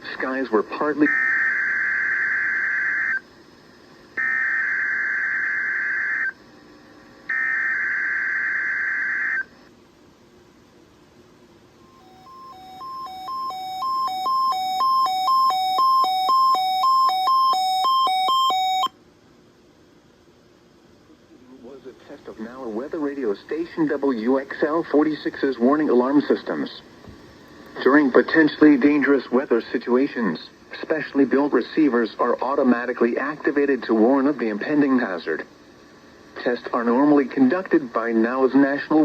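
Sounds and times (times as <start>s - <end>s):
two-tone attention signal: 11.8s - 18.9s
digital warble data tones: 11.9s - 18.9s.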